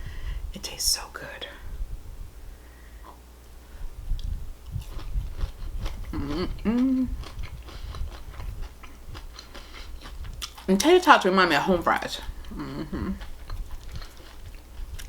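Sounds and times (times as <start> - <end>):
voiced hum with bending pitch: 1.6 - 10.5, 11.2 - 15.0
chewing crunchy food: 4.1 - 11.2, 12.0 - 15.0.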